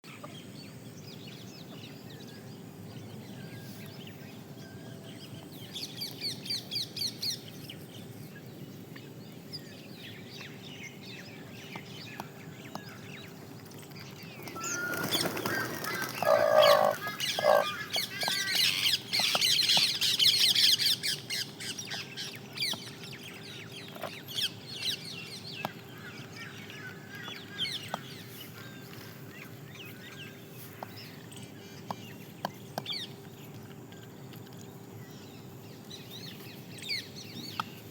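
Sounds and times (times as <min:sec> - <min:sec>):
peahen calling: 0:14.4 - 0:18.9
rapid high chirping: 0:14.7 - 0:17.8.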